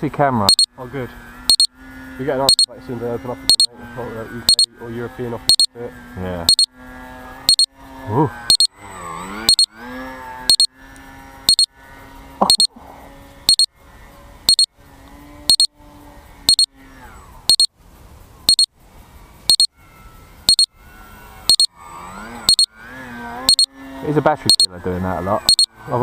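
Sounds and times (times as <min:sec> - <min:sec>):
electronic double beeps: 0:00.4 - 0:00.7, 0:01.5 - 0:01.7, 0:02.4 - 0:02.7, 0:03.5 - 0:03.7, 0:04.5 - 0:04.7, 0:05.5 - 0:05.8, 0:06.5 - 0:06.7, 0:07.5 - 0:07.7, 0:08.5 - 0:08.7, 0:09.5 - 0:09.7, 0:10.5 - 0:10.7, 0:11.5 - 0:11.7, 0:12.4 - 0:12.7, 0:13.5 - 0:13.7, 0:14.5 - 0:14.7, 0:15.5 - 0:15.7, 0:16.5 - 0:16.7, 0:17.5 - 0:17.7, 0:18.5 - 0:18.7, 0:19.5 - 0:19.7, 0:20.5 - 0:20.7, 0:21.5 - 0:21.7, 0:22.5 - 0:22.7, 0:23.5 - 0:23.7, 0:24.5 - 0:24.7, 0:25.4 - 0:25.7.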